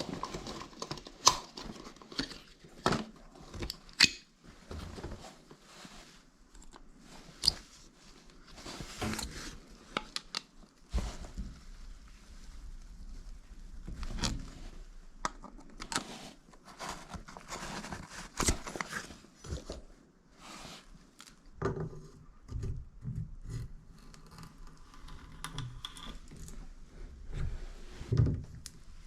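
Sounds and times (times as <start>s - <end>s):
scraping and rustling: 0.0s - 21.0s.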